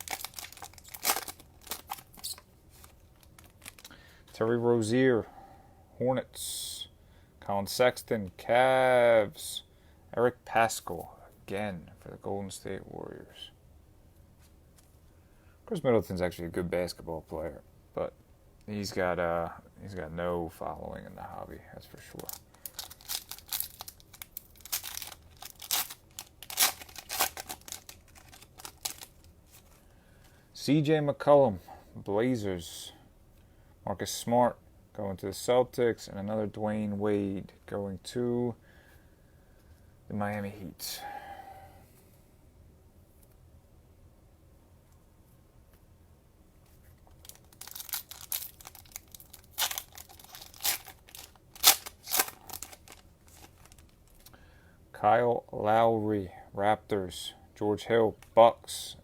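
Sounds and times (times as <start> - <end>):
cellophane wrapper crinkling and tearing: 0.0 - 4.0, 22.1 - 29.8, 47.1 - 54.3.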